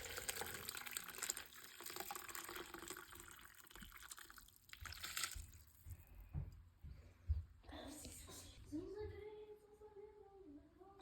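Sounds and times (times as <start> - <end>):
liquid pouring and splashing: 0.0 - 6.0.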